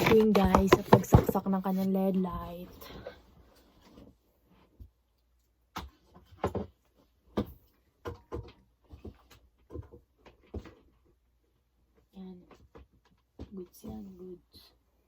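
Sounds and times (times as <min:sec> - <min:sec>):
hard objects knocking and clicking: 0:00.0 - 0:01.6, 0:05.8 - 0:10.9.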